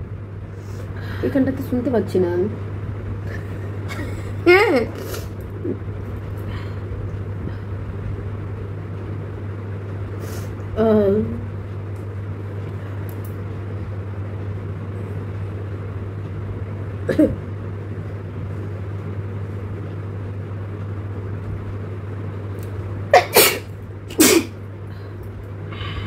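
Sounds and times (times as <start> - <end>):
steady low hum: 0.0 - 26.0
person sneezing: 23.2 - 24.6.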